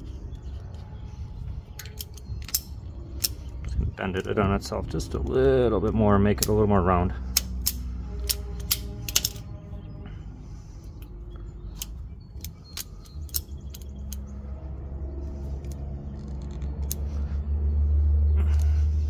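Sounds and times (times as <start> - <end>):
low steady hum: 0.0 - 19.0
sharp metallic clicks and taps: 7.3 - 9.4.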